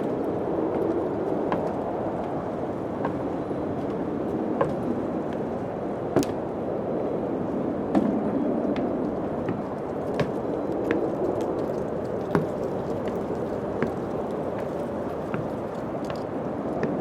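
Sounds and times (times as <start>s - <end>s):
wind blowing: 0.0s - 17.0s
sharp knocks or creaks: 6.2s - 6.4s.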